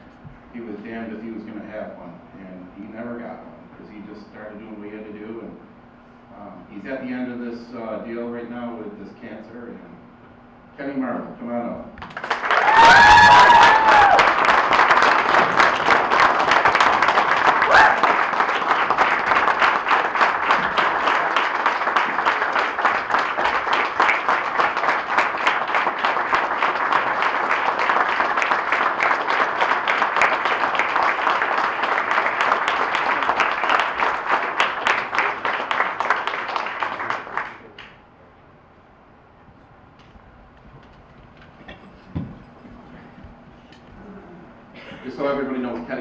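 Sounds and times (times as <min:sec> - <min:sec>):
audience applauding: 0:12.0 - 0:37.9.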